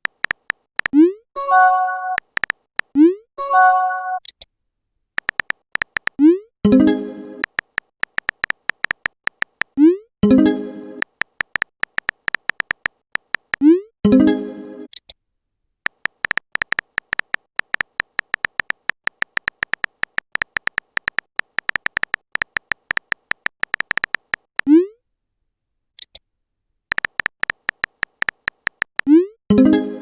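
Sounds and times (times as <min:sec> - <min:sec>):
typing key clicks: 0:00.0 - 0:03.1, 0:05.2 - 0:06.4, 0:07.4 - 0:09.8, 0:11.0 - 0:13.7, 0:15.9 - 0:24.7, 0:26.9 - 0:29.2
high blips: 0:05.2 - 0:13.9, 0:15.9 - 0:24.9, 0:26.9 - 0:29.3.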